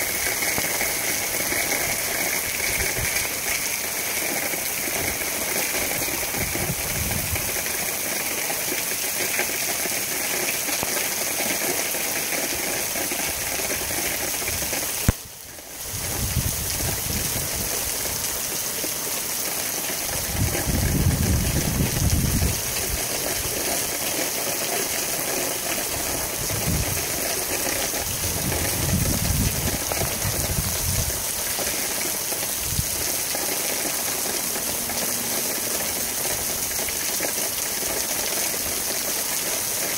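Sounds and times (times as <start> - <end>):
heavy rain and wind: 0.0 - 39.9
wind buffeting microphone: 6.3 - 7.5, 15.8 - 18.2, 20.2 - 23.0, 26.1 - 27.2, 28.0 - 31.3.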